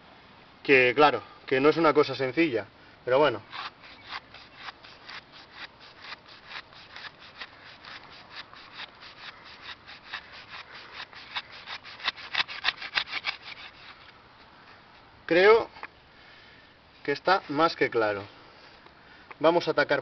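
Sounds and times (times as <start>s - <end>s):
knife sawing through rope: 3.5s - 14.1s.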